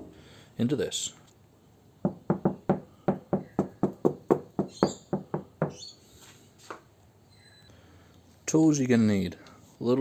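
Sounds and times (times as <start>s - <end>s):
knuckles knocking on steel door: 2.0s - 5.8s.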